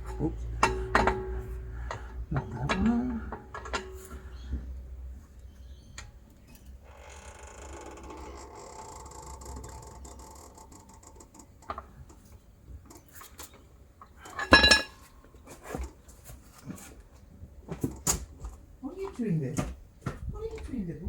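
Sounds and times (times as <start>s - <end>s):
small knocks: 0.0s - 4.8s
tools rattling on exhaust mounts: 0.0s - 5.5s, 11.0s - 15.1s
loud metal clank: 14.4s - 15.0s.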